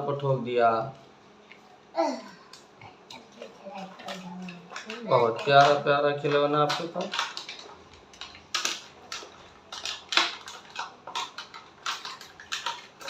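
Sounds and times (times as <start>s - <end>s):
plastic toys clattering: 3.3s - 13.0s.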